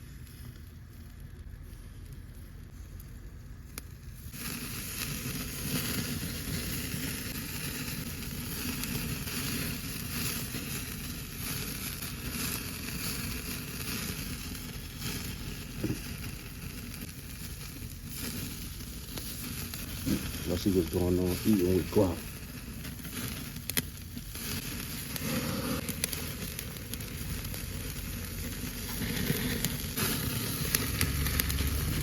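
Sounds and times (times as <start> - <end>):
butter sizzling on a grill: 3.7 - 32.0
low rumble: 14.3 - 32.0.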